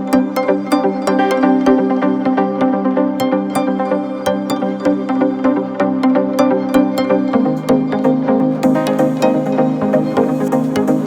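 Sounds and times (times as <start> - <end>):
electronic music with synth: 0.0 - 11.0.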